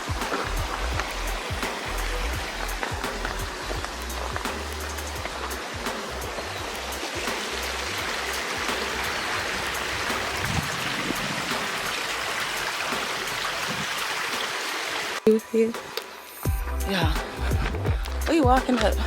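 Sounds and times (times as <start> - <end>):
stream water rushing: 0.0 - 15.3.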